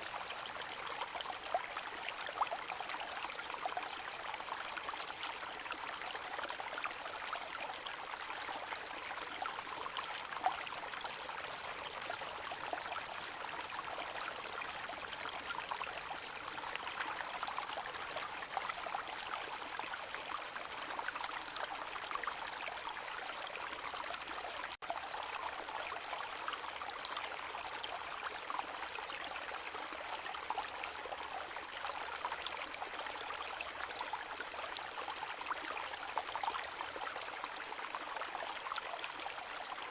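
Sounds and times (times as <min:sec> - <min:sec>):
brook babbling over stones: 0:00.0 - 0:39.9.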